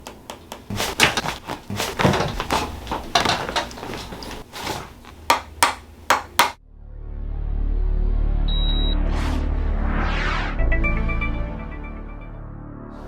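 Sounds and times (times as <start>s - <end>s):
sharp clicks and knocks: 0.0s - 6.6s.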